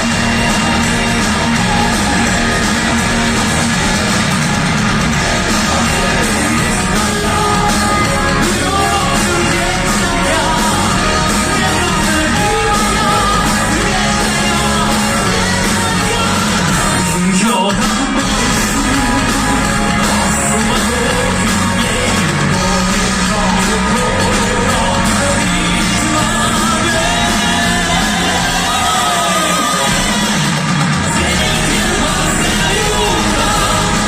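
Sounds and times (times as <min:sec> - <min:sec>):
loud rock band music: 0:00.0 - 0:34.0
person singing: 0:05.1 - 0:34.0.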